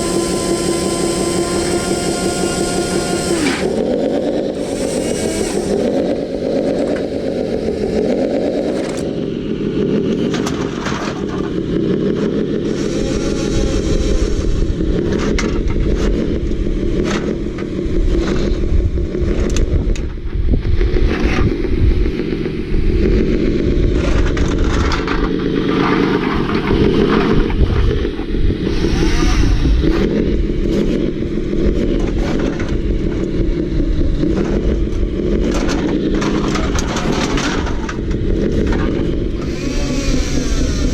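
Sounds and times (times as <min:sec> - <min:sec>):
toy excavator motors whirring: 0:00.0 - 0:09.2, 0:10.1 - 0:18.7, 0:23.2 - 0:40.9
claw scraping and clattering cans: 0:08.6 - 0:09.1.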